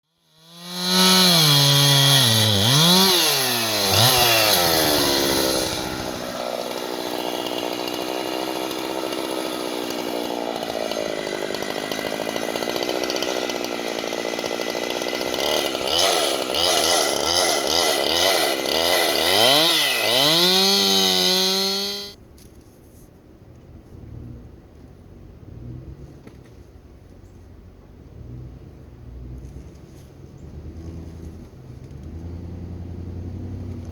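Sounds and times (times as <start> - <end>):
chainsaw engine revving: 0.1 - 22.2.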